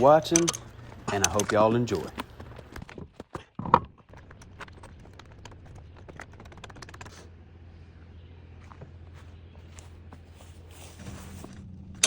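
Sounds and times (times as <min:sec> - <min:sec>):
faint low hum: 0:04.0 - 0:12.0.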